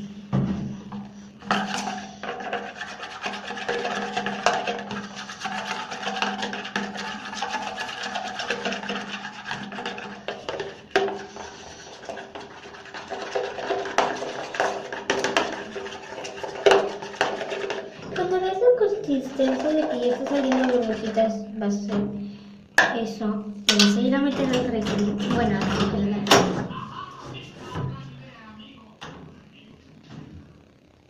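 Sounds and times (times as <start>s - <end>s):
stick stirring shampoo on plate: 0.9s - 22.0s, 23.7s - 26.0s.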